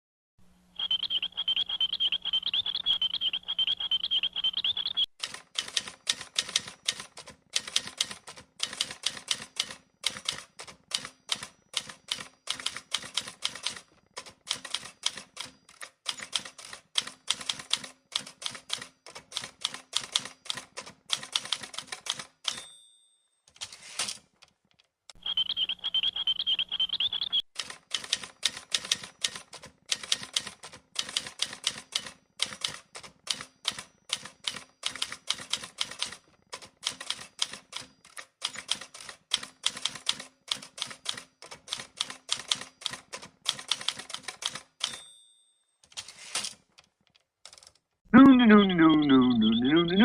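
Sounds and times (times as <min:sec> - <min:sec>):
typewriter keys clicking: 0:05.2 - 0:22.6, 0:27.6 - 0:45.0
typewriter bell ding: 0:09.4 - 0:13.4, 0:22.4 - 0:23.5, 0:32.0 - 0:35.5, 0:44.8 - 0:45.9.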